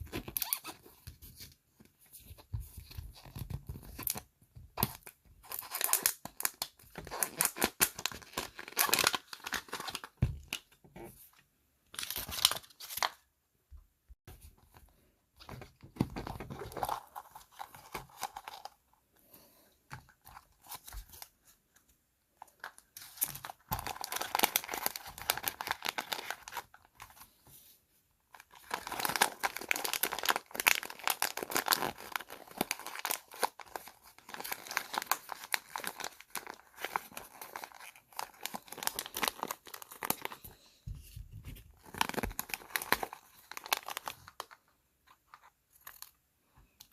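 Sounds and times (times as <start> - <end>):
plastic packaging crinkling: 22.6 - 26.9, 28.3 - 40.4, 41.8 - 44.6.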